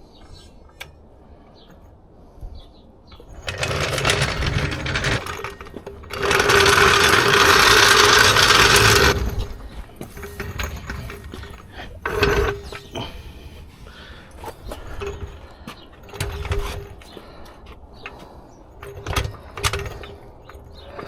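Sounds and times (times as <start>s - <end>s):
hand tools clinking: 3.3s - 13.2s.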